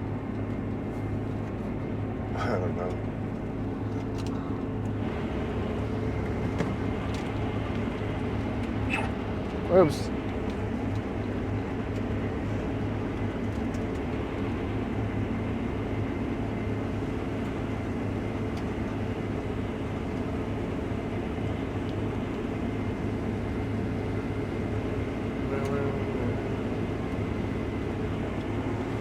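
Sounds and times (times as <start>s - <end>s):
combine harvester droning: 0.0s - 29.0s.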